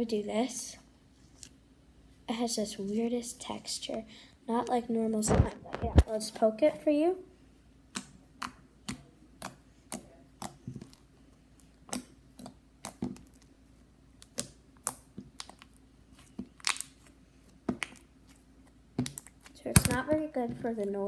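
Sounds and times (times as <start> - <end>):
slime clicking and popping: 11.6 - 13.5, 14.2 - 17.1, 18.9 - 20.0.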